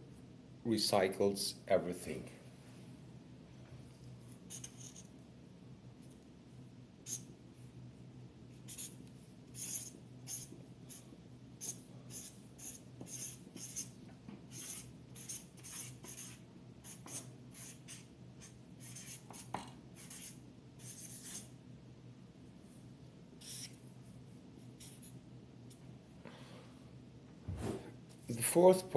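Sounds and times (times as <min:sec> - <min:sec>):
faint steady hum: 0:00.0 - 0:28.9
pen scratching on paper: 0:04.5 - 0:05.1, 0:08.7 - 0:09.0, 0:09.6 - 0:11.0, 0:11.6 - 0:21.5, 0:24.8 - 0:25.1.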